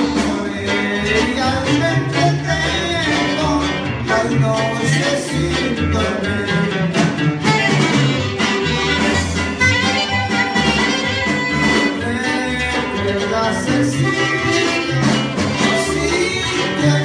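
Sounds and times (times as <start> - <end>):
live band playing dance music: 0.0 - 17.0.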